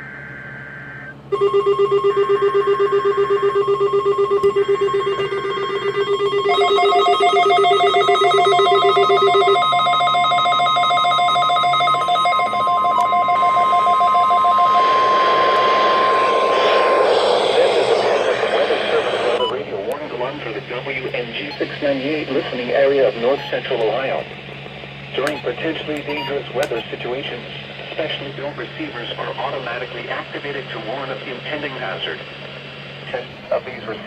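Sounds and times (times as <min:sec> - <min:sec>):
warbling digital data bursts: 0:00.0 - 0:01.1, 0:04.7 - 0:19.5
static hiss: 0:00.0 - 0:01.2, 0:13.1 - 0:26.0
pulsing alarm beeps: 0:00.0 - 0:19.6, 0:25.3 - 0:26.9
steady warning alarm tone: 0:00.0 - 0:19.6.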